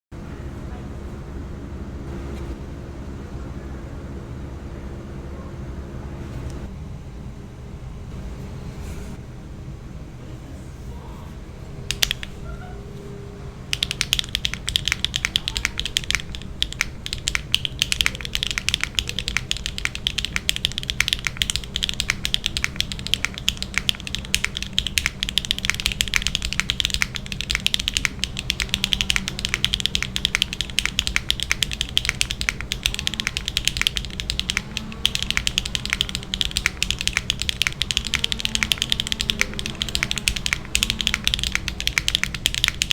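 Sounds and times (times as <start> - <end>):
low steady hum: 0.2 - 42.9
typing on mechanical keyboard: 11.9 - 12.3, 13.7 - 42.9.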